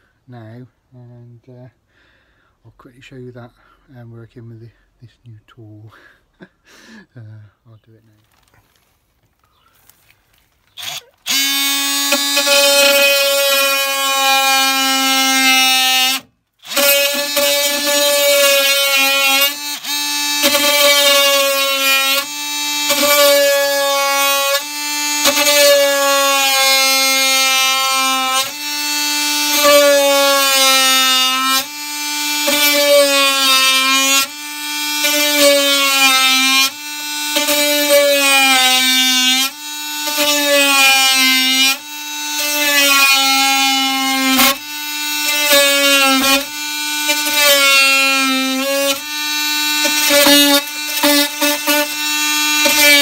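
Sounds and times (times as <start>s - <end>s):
oscillating multi-tool cutting: 10.7s - 53.0s.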